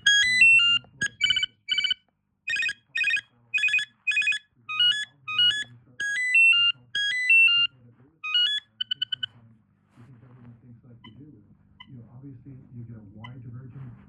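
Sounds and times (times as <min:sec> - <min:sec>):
beeping ringtone melody: 0:00.0 - 0:09.3
cordless phone ringtone beeps: 0:00.0 - 0:09.3.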